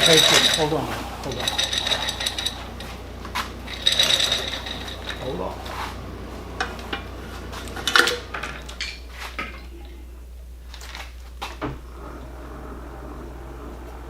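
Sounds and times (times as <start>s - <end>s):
metal tools clinking: 0.0s - 10.0s
low hum: 0.0s - 14.0s.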